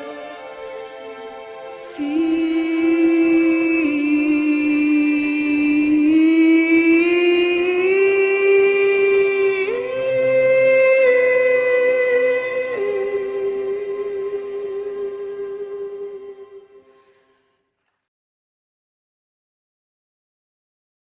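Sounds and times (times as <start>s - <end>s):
wordless sung melody: 0.0s - 17.6s.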